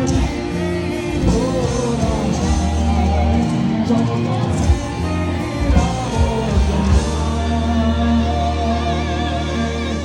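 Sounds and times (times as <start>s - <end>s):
rock band holding a chord: 0.0s - 10.0s.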